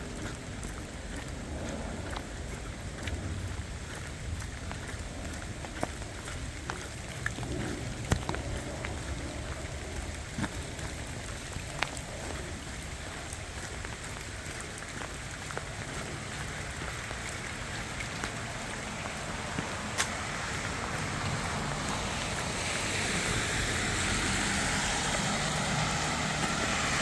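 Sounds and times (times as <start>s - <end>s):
sharp raindrops: 0.0s - 27.0s
steady rain falling: 0.0s - 27.0s.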